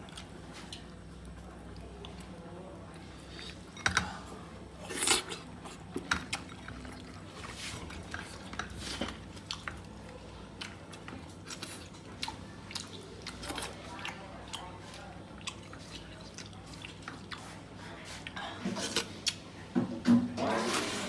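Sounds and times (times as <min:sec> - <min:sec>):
wet chewing: 0:04.8 - 0:19.4.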